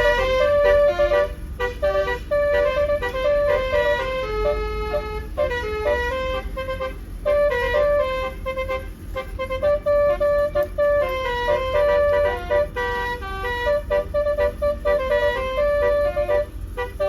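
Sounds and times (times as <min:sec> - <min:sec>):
bus horn playing melody: 0:00.0 - 0:17.0.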